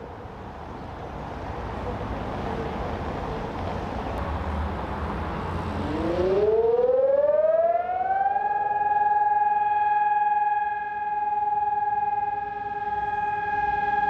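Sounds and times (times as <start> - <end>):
warning siren rising in pitch: 5.5 - 14.0.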